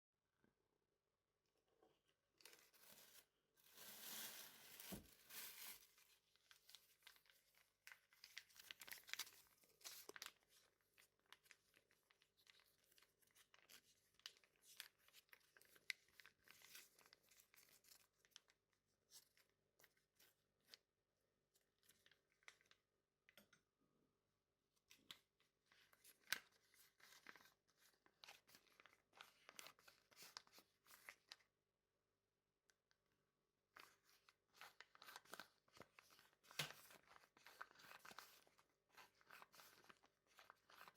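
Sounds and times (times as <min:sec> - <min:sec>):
paper rustling and crinkling: 0:02.4 - 0:18.5, 0:25.0 - 0:31.4, 0:33.7 - 0:40.9.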